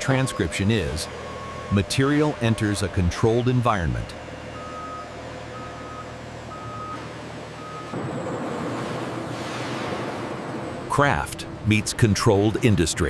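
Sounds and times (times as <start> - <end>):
loud steady rumble: 0.0 - 6.6, 7.2 - 13.0
truck reversing alarm beeping: 0.0 - 8.2
engine hum: 0.0 - 13.0.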